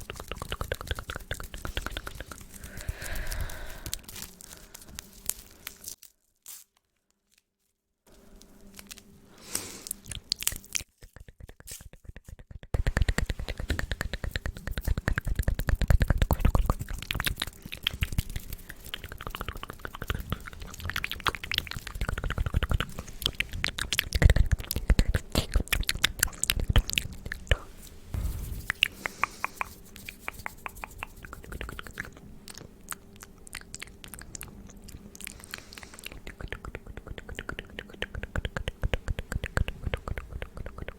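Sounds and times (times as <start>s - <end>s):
wet mouth clicks and lip smacks: 0.0s - 5.1s, 9.9s - 27.6s, 28.2s - 40.9s.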